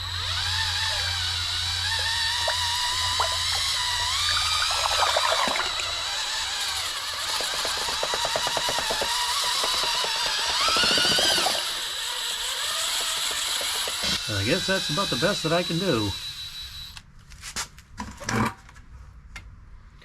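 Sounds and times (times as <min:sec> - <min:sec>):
drill motor whine: 0:00.0 - 0:17.0
paint stirrer churning paint: 0:00.3 - 0:11.8.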